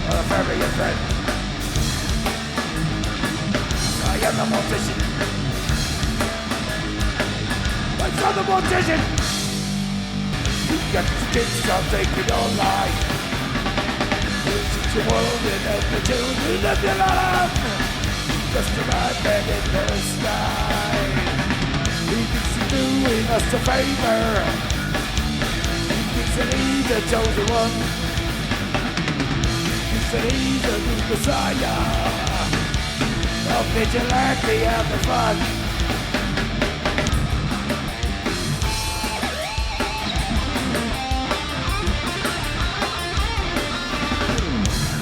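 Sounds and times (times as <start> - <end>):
bass guitar: 0.0 - 45.0
distorted electric guitars: 0.0 - 45.0
drum kit: 0.0 - 45.0
person singing: 4.0 - 5.1, 10.7 - 13.3, 14.4 - 17.9, 18.5 - 21.3, 22.0 - 24.7, 26.0 - 28.0, 29.9 - 32.8, 33.4 - 35.6.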